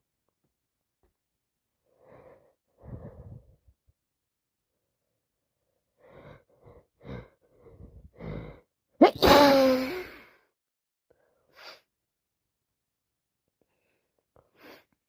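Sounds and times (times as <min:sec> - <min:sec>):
woman sneezing: 0:09.0 - 0:10.2.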